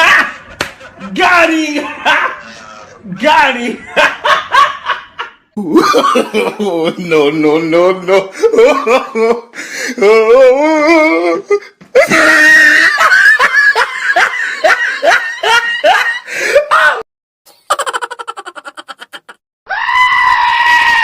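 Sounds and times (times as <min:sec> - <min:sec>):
hearty laughter: 0:03.8 - 0:07.0, 0:12.6 - 0:16.7, 0:17.5 - 0:19.4.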